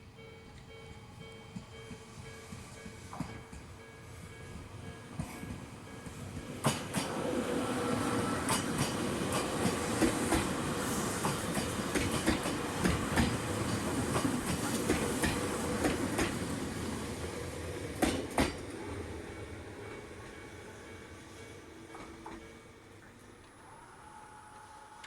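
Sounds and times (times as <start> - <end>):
train rumble: 0.1 - 23.8
train wheels clacking over rail joints: 5.2 - 7.2, 8.4 - 16.5, 18.0 - 18.7.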